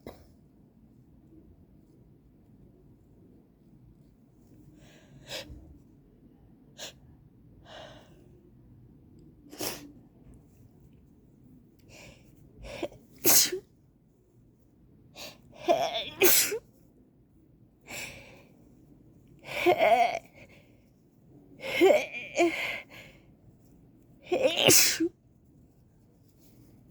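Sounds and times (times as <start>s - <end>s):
woman sneezing: 13.2s - 13.6s, 15.7s - 16.6s, 24.3s - 25.1s.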